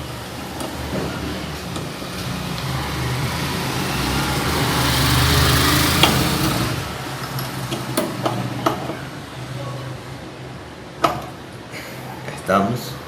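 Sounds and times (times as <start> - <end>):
vehicle engine passing by: 0.0 - 10.2.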